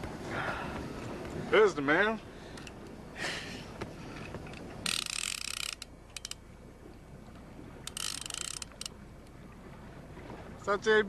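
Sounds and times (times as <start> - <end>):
fishing reel ratcheting: 4.8 - 6.4, 7.9 - 8.9.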